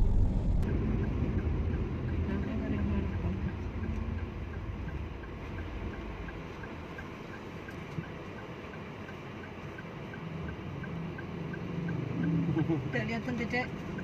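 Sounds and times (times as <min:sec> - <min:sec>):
low vehicle rumble: 0:00.0 - 0:08.3
faint regular ticking: 0:00.6 - 0:14.0.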